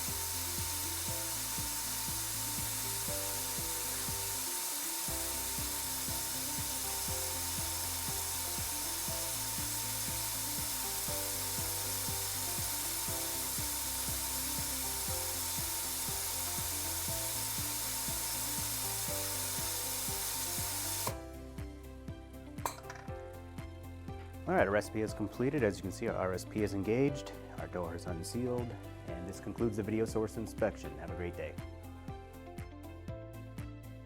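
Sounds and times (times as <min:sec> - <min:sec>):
spin dryer airy hiss: 0:00.0 - 0:21.5.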